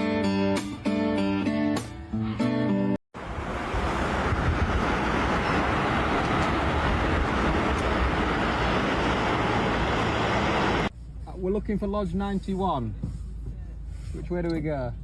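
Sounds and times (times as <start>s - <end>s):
moving vehicle rumbling: 3.2s - 15.0s.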